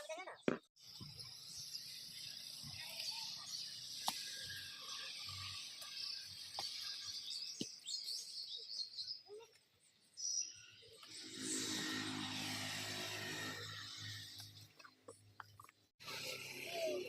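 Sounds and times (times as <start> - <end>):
small birds chirping: 0.0 - 11.4.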